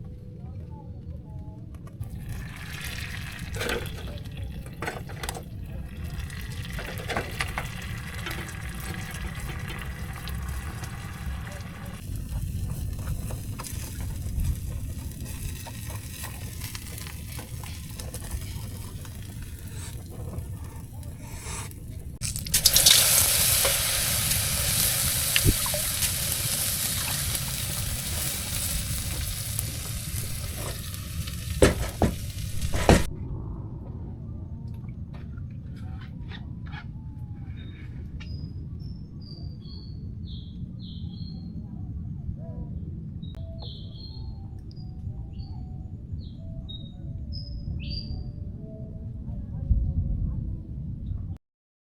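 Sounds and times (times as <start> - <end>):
loud frying sizzle: 2.0 - 33.1.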